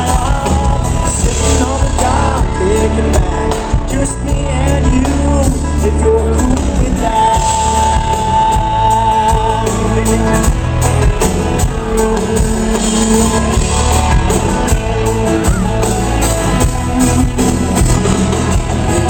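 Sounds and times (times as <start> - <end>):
drums steady beat: 0.0 - 19.0
rock guitars: 0.0 - 19.0.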